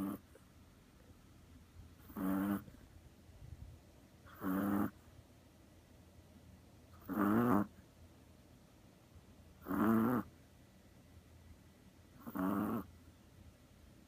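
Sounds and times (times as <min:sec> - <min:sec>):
dog snoring: 0:00.0 - 0:00.4, 0:02.0 - 0:02.8, 0:04.2 - 0:05.1, 0:07.0 - 0:07.8, 0:09.6 - 0:10.3, 0:12.2 - 0:12.9.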